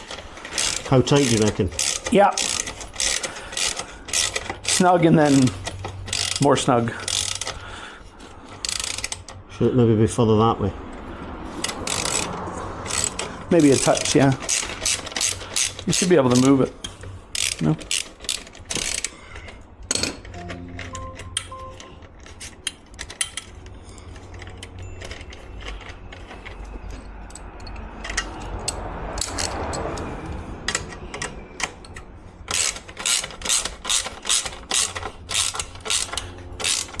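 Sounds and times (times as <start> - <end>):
socket ratchet clicking: 0.0 - 7.6, 8.6 - 9.4, 11.6 - 16.6, 17.3 - 19.2, 30.7 - 37.0.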